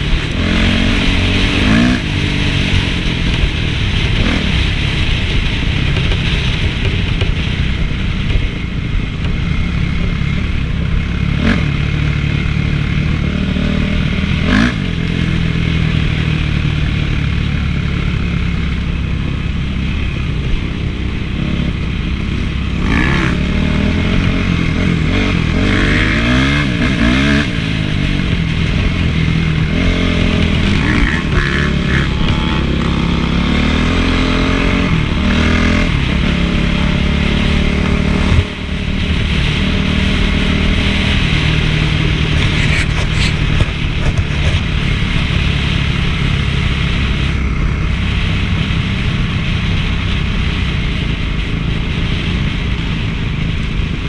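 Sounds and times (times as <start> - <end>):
motocross engine revving: 0.0 - 6.4, 9.5 - 20.0, 21.3 - 48.2.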